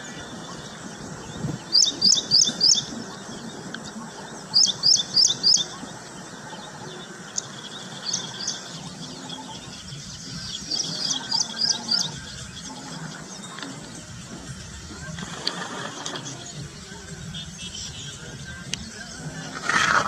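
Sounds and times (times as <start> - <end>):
small bird chirping: 1.3 - 14.1.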